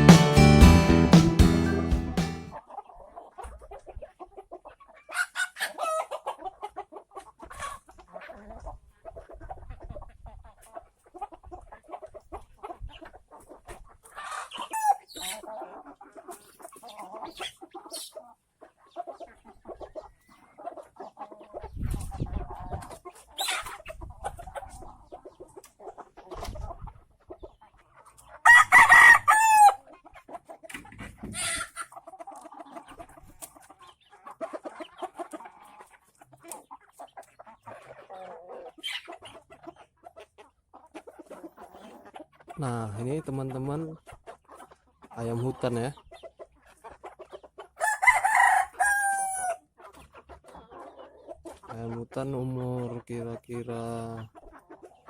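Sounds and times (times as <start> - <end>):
chickens clucking: 0.0 - 55.0
rooster crowing: 28.5 - 29.8, 47.8 - 49.6.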